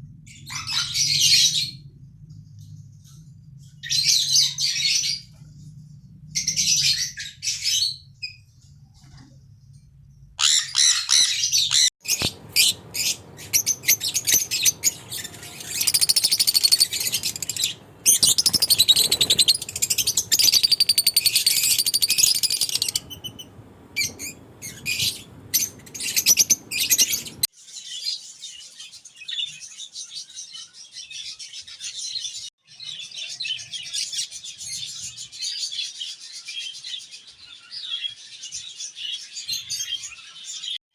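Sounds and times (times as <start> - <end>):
budgerigars chirping and warbling: 0.3 - 1.9, 3.8 - 5.4, 6.4 - 8.4, 10.4 - 40.8
low background rumble: 12.2 - 27.5.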